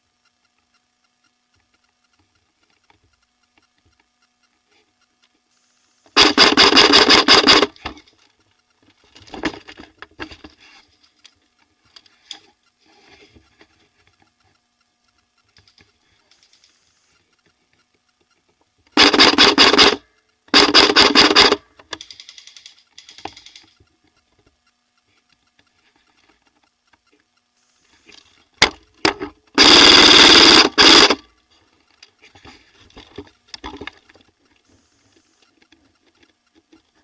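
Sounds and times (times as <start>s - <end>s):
airsoft gun full-auto burst: 6.1s - 7.9s, 19.0s - 23.6s, 29.6s - 31.3s.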